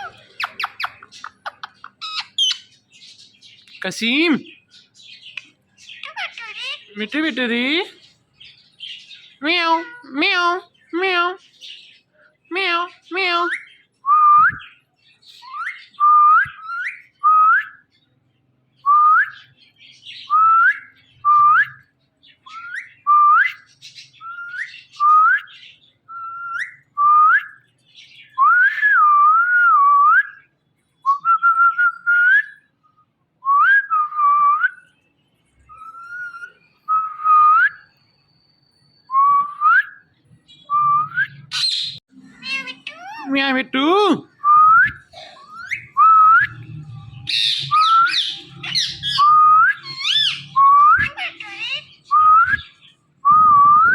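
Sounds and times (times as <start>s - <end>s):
parrot whistling: 40.7s - 43.4s, 44.4s - 53.9s
harsh parrot call: 41.4s - 52.7s.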